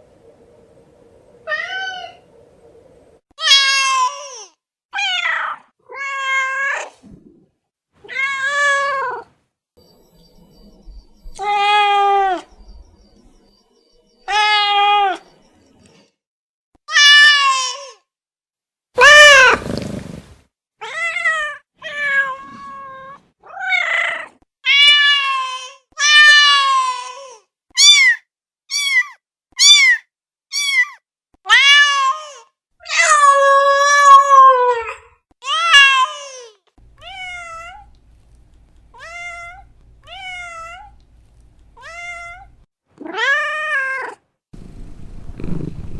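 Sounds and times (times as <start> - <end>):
cats meowing: 9.8 - 12.5, 19.0 - 20.0.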